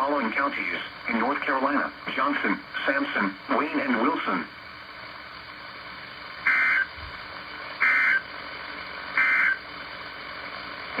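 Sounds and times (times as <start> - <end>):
digital data tones: 6.5 - 6.9, 9.2 - 9.6.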